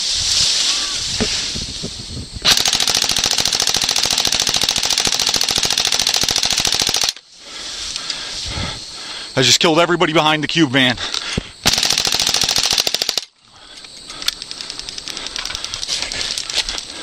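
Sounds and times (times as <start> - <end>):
airsoft gun full-auto burst: 2.4 - 7.2, 11.6 - 13.3.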